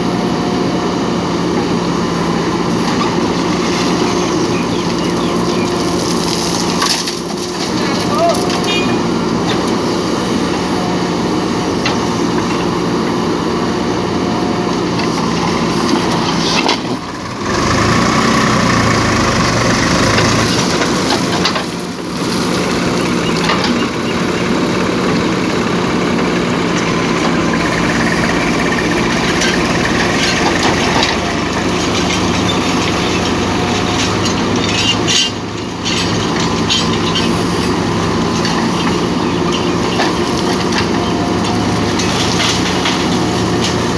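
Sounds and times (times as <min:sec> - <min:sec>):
diesel engine running: 0:00.0 - 0:43.9
clattering and scraping: 0:02.8 - 0:09.8, 0:14.9 - 0:18.0, 0:26.7 - 0:43.9.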